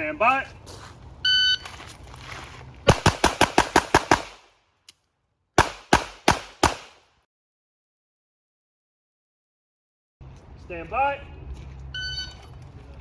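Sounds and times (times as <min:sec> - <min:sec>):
pistol shots: 0:02.9 - 0:04.5, 0:05.6 - 0:07.1.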